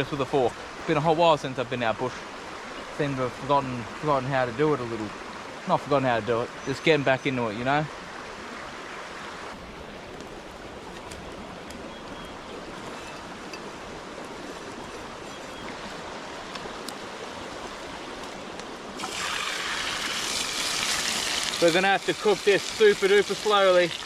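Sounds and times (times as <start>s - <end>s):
faint crackles: 9.6s - 24.0s
chicken sizzling in a pan: 19.0s - 24.0s.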